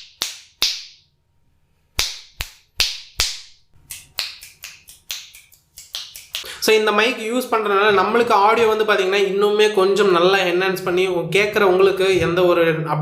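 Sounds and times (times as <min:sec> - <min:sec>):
finger snaps: 0:02.0 - 0:06.5.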